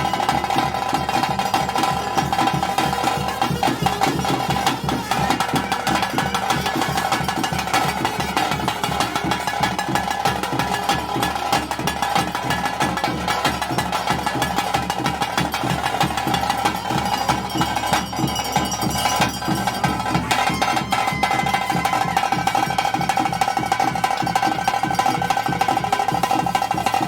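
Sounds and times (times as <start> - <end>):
clanging metal percussion: 0.0 - 27.0
fast dense drumming: 0.0 - 27.0.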